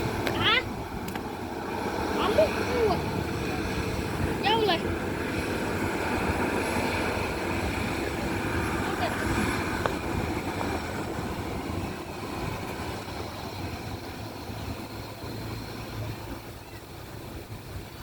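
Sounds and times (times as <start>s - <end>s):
airliner engine and airflow noise: 0.0s - 18.0s.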